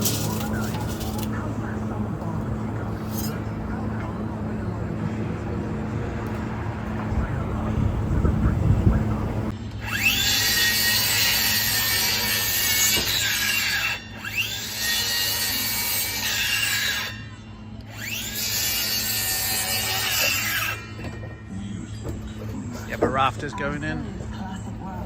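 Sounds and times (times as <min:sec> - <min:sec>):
power saw cutting timber: 0:09.8 - 0:17.2, 0:17.9 - 0:21.0.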